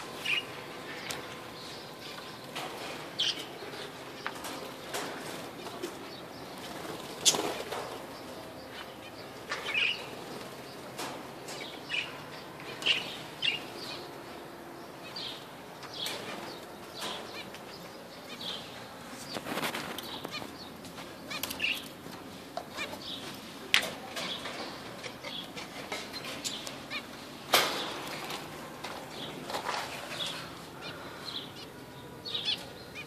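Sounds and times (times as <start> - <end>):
budgerigars chirping: 6.3 - 10.4, 11.6 - 14.1, 30.2 - 33.0
wing fluttering: 6.6 - 8.1.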